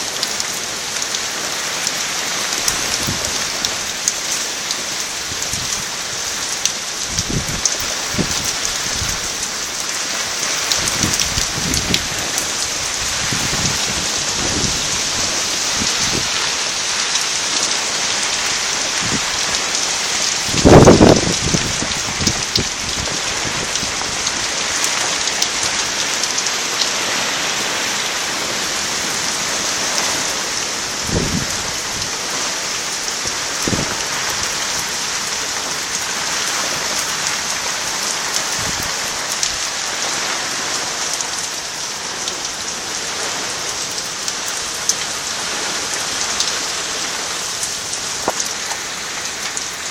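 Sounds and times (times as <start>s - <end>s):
heavy rain and hail: 0.0s - 49.9s
wind gusts rumbling: 5.2s - 36.8s.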